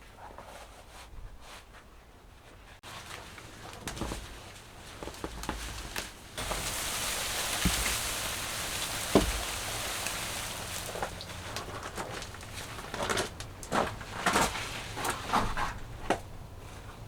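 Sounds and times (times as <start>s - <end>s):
steady hiss: 6.4s - 11.5s
thump: 9.1s - 9.6s.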